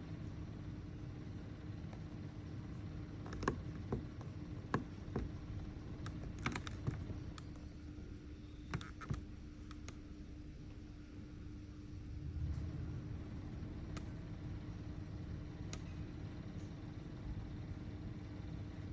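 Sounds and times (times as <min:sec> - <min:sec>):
steady low hum: 0:00.0 - 0:18.9
air cooler clicking: 0:03.1 - 0:10.2.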